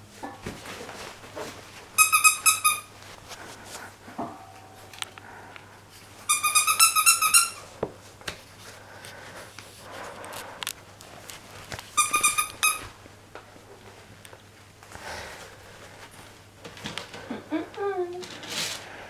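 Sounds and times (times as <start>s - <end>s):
squeaky dog toy squeaking: 2.0s - 2.9s, 6.3s - 7.7s, 12.0s - 12.9s.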